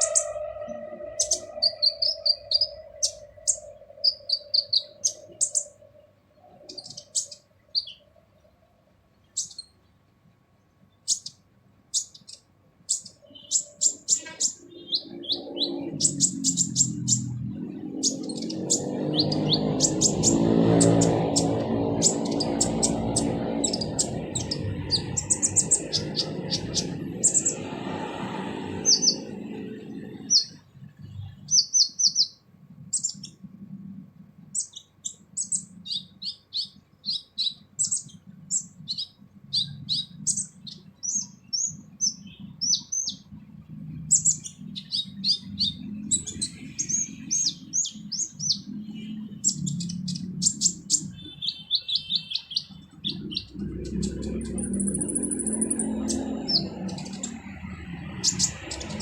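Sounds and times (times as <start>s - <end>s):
low hum: 0.0s - 7.5s, 53.0s - 59.0s
sunbird singing: 0.0s - 10.0s, 10.8s - 59.0s.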